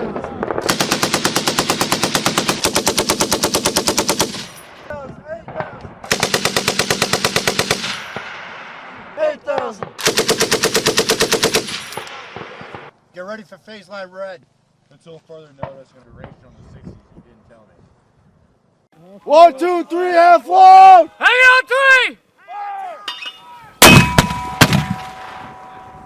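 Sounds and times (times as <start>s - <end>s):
machine gun firing bursts: 0.6s - 4.5s, 6.1s - 8.1s, 10.0s - 12.9s.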